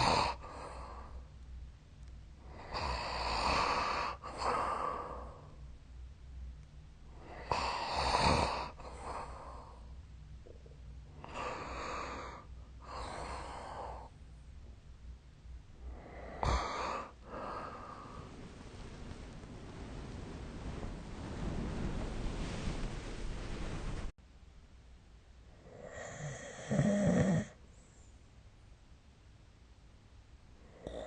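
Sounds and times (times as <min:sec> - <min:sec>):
person breathing heavily: 0:15.8 - 0:19.1.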